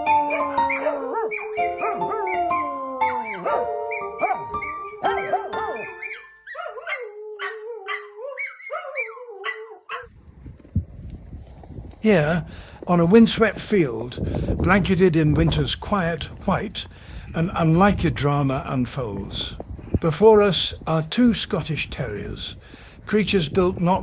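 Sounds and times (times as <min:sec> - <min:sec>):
music with held notes: 0:00.0 - 0:06.4
dogs howling and yelping: 0:00.0 - 0:10.1.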